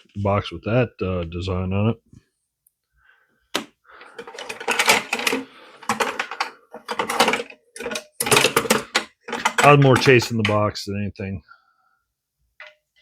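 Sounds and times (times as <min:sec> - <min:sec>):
metal tools clinking in toolbox: 0:04.1 - 0:10.6.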